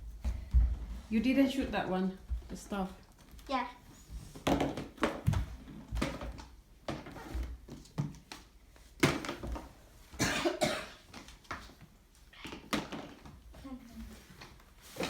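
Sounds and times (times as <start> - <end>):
child coughing: 10.2 - 11.1.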